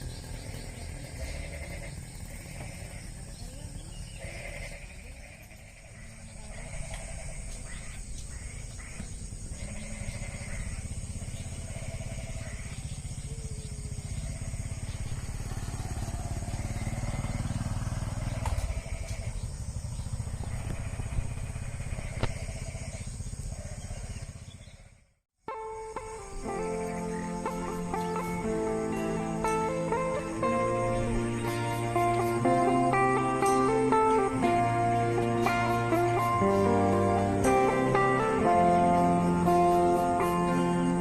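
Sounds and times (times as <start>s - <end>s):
engine rumbling: 0.0s - 41.0s
high-pitched drone: 26.2s - 41.0s.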